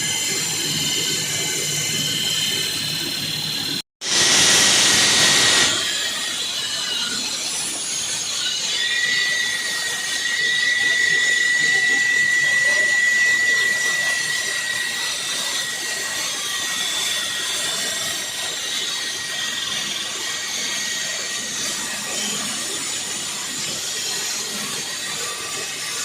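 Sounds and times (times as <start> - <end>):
floor saw cutting concrete: 0.0 - 26.0
high whine: 0.0 - 26.0.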